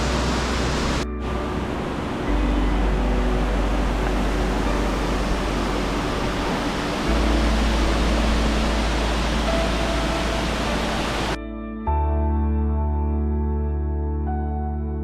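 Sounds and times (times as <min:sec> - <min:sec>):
waterfall rushing: 0:00.0 - 0:11.4.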